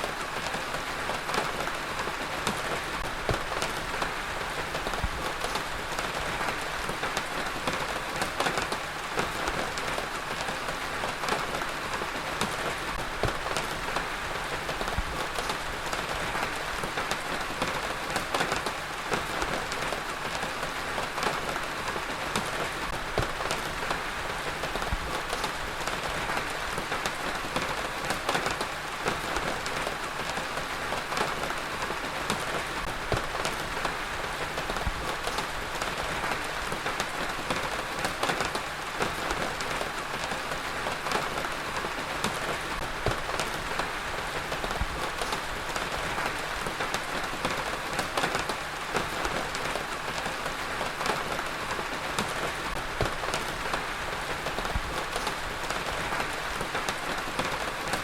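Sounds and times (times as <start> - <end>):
heavy rain pattering: 0.0 - 58.0.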